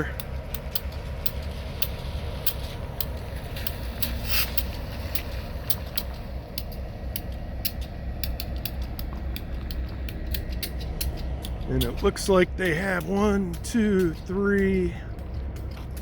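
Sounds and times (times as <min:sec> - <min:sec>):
diesel locomotive idling: 0:00.0 - 0:16.0
sharp irregular clicks: 0:00.0 - 0:16.0
short air hiss: 0:04.2 - 0:04.7.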